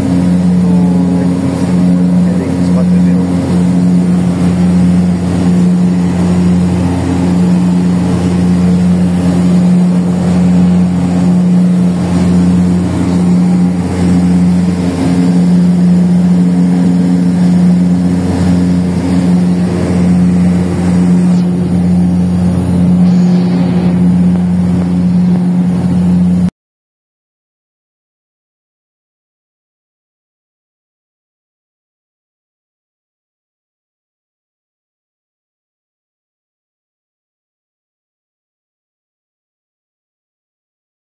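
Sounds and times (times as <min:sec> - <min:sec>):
propeller aircraft engines droning: 0:00.0 - 0:26.5.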